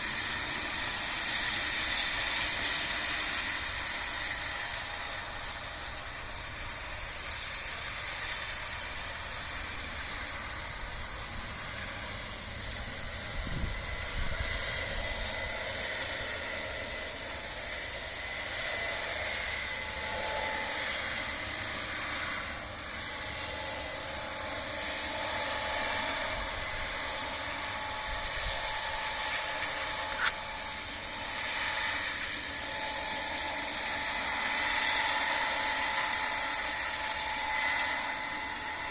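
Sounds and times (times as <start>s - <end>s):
farm machinery drone: 0.0s - 38.9s
high mechanical whines: 0.0s - 38.9s
sharp click: 30.1s - 30.4s.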